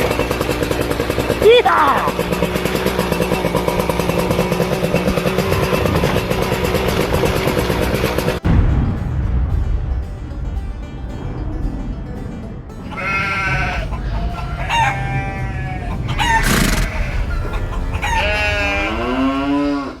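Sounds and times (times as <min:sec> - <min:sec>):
rooster crowing: 0:12.9 - 0:20.0
short harsh burst: 0:16.2 - 0:17.4.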